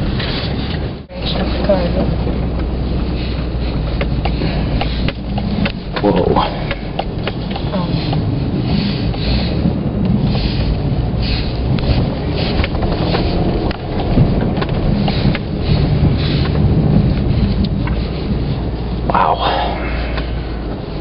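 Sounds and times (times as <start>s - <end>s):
engine and tyres rumbling: 0.0s - 21.0s
knocks and rattles: 11.7s - 18.6s.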